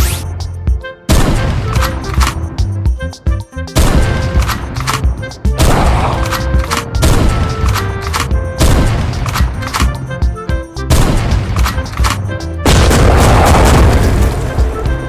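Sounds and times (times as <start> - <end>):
music: 0.0 - 15.0
booming blasts: 1.1 - 2.3, 3.8 - 4.8, 5.6 - 10.0, 10.9 - 12.0, 12.6 - 15.0.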